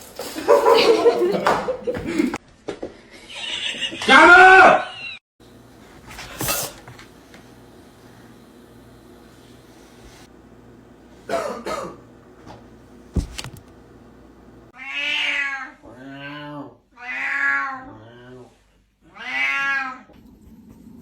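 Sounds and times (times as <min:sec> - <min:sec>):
cat meowing: 0:14.8 - 0:18.4, 0:19.1 - 0:20.1.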